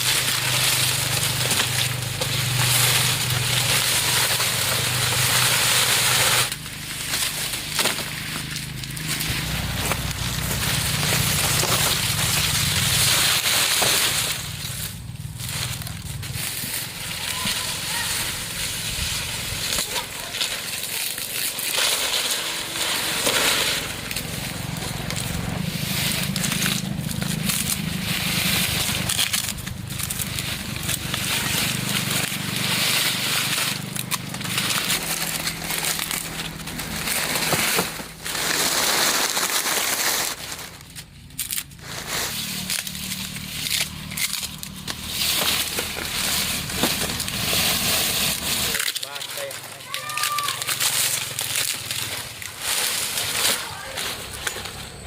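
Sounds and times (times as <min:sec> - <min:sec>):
crackling and rustling: 0:00.0 - 0:55.0.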